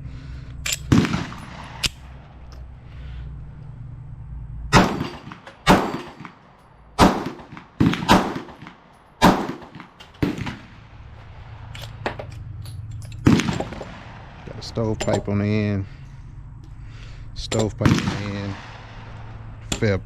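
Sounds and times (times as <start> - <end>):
pistol shots: 0.7 - 2.2, 4.7 - 10.9, 13.2 - 15.0, 17.7 - 19.7.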